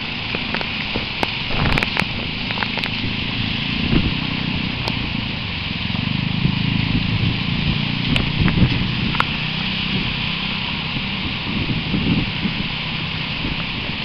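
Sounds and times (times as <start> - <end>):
raindrop clicks: 0.0 - 4.1, 4.8 - 5.3, 8.1 - 10.2
heavy rain hissing: 0.0 - 14.0
low rumble: 0.0 - 14.0.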